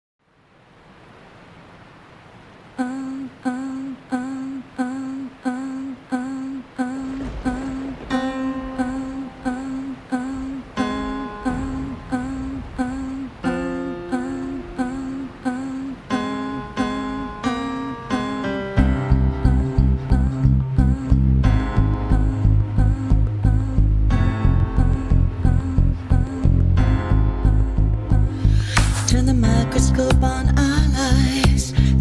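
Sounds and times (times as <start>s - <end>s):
held chords: 8.0s - 32.0s
bass: 18.8s - 32.0s.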